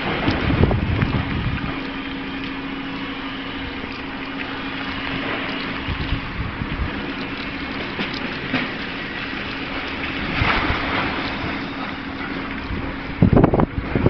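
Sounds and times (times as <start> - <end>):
continuous noisy rush: 0.0 - 14.0
machinery engine hum: 0.0 - 14.0.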